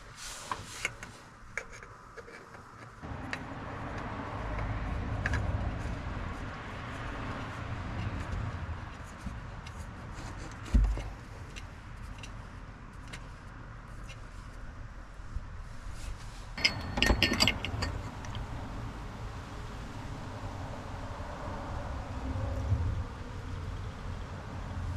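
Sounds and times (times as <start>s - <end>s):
dull thump: 10.6s - 11.1s
metallic clinking and jingling: 16.6s - 18.3s.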